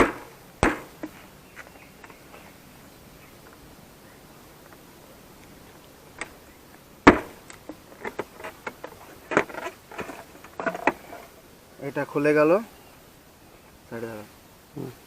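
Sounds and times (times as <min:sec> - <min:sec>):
sharp knock: 0:00.0 - 0:01.1, 0:07.1 - 0:07.4.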